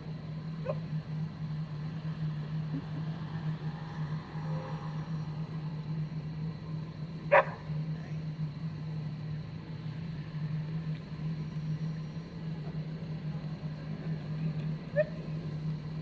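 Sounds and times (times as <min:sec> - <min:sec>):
steady low hum: 0:00.0 - 0:16.0
dog bark: 0:07.3 - 0:07.7.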